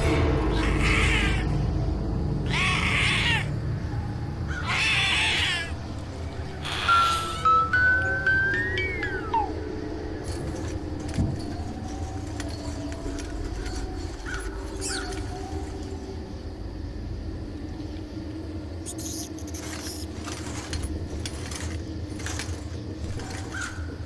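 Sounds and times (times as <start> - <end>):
rising squeak: 6.5 - 15.8
scattered clicks: 18.9 - 23.5.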